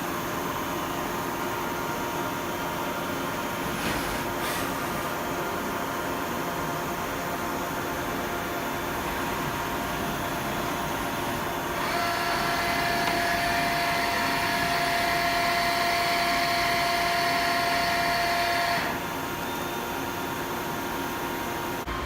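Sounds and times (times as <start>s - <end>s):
machine mechanical hum: 0.0s - 22.0s
high motor whine: 8.7s - 22.0s.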